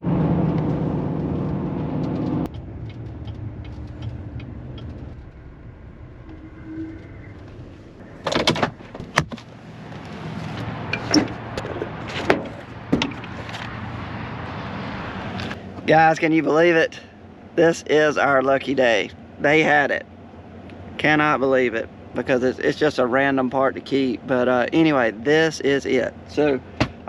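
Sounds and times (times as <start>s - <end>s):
vehicle engine running: 0.0s - 27.0s
sharp clicks and clunks: 8.2s - 13.8s.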